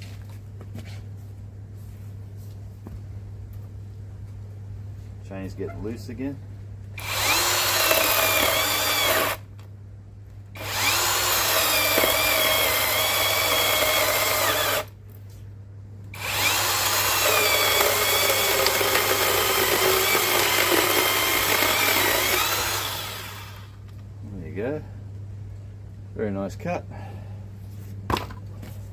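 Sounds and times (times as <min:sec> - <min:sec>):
chainsaw cutting through log: 0:07.0 - 0:09.5, 0:10.6 - 0:14.9, 0:16.2 - 0:23.8.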